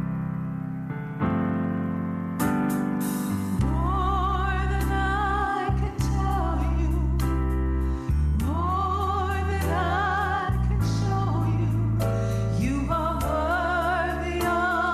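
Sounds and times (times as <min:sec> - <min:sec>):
sustained keyboard chords: 0:00.0 - 0:14.9
person singing with vibrato: 0:03.6 - 0:14.9.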